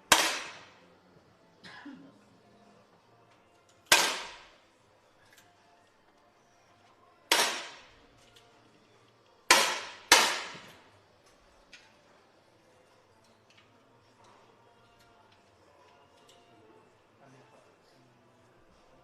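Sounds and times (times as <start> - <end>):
air rifle shots cracking: 0.0 - 0.8, 3.9 - 4.6, 7.3 - 7.9, 9.5 - 10.8.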